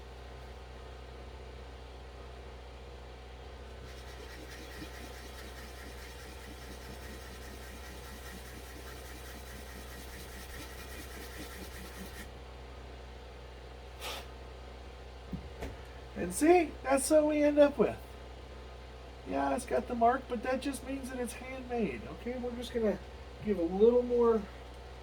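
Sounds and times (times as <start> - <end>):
sandpaper rubbing on wood: 3.8 - 12.3.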